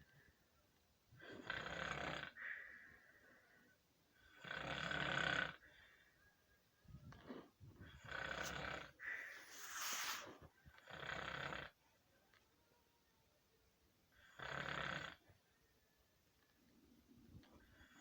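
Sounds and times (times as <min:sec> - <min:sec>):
loud snoring: 0:01.2 - 0:02.4, 0:04.3 - 0:05.6, 0:07.9 - 0:10.2, 0:10.8 - 0:11.8, 0:14.2 - 0:15.2.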